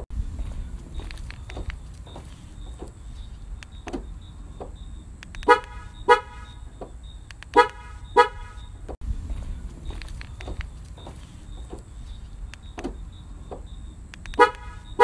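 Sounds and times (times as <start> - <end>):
low background rumble: 0.0 - 15.0
car horn honks: 5.4 - 6.8, 7.4 - 9.0, 14.2 - 15.0.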